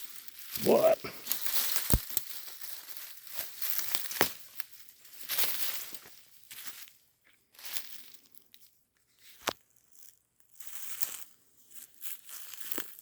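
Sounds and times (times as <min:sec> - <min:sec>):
footsteps through dry leaves: 0:01.3 - 0:04.2.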